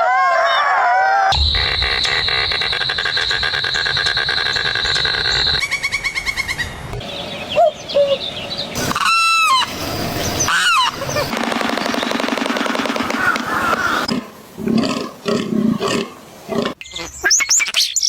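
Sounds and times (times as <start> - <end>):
bird honking: 1.4 - 5.6
animal calls: 8.8 - 11.4.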